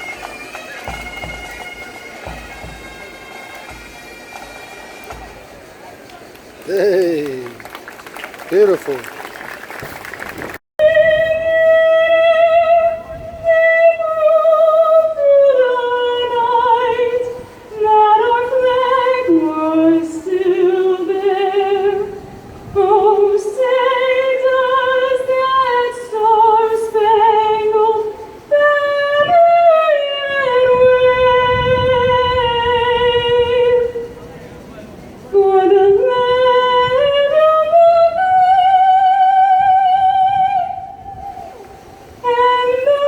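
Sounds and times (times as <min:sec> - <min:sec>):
woman singing with vibrato: 0:10.8 - 0:34.1, 0:35.3 - 0:43.0.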